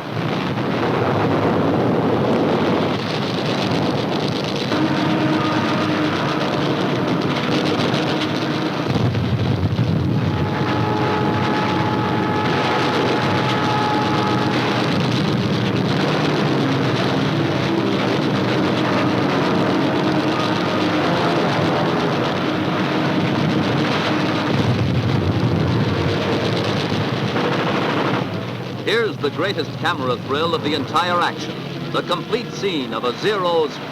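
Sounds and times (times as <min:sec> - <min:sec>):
aircraft engines droning: 0:00.0 - 0:33.9
whining tones: 0:04.5 - 0:33.9.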